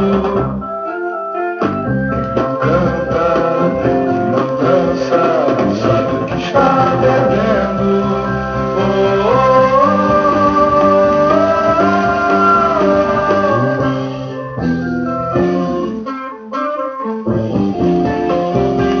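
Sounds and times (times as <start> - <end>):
person singing long held notes: 0.0 - 0.7, 2.6 - 14.6
guitar accompaniment: 0.0 - 19.0.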